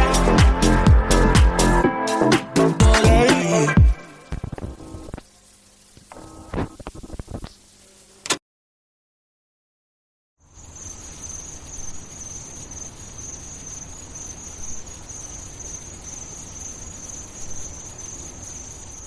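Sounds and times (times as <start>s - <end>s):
faint low hiss: 3.2s - 8.4s, 10.4s - 19.0s
high-pitched insect chirring: 10.5s - 19.0s.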